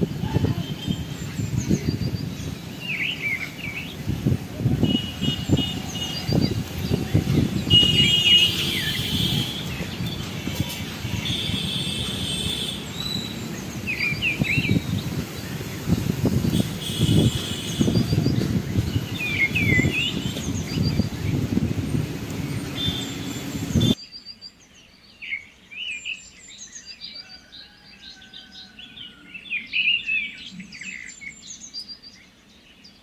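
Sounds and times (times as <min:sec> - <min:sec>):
low rumbling noise: 0:00.0 - 0:24.0.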